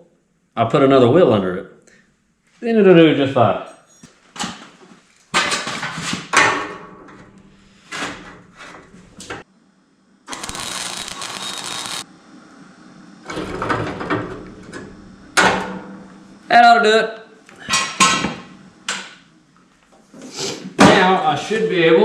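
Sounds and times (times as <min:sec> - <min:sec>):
steady hissing: 0:10.3 - 0:12.9.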